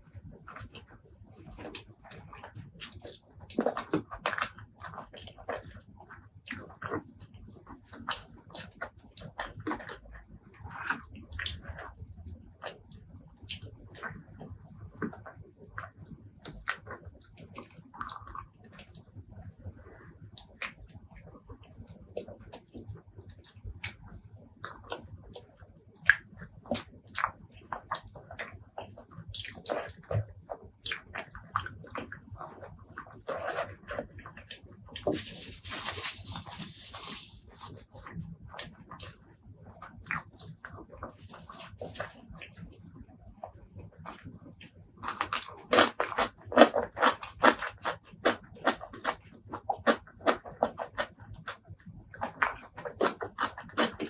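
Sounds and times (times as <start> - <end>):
wet chewing and lip smacks: 22.2 - 54.0.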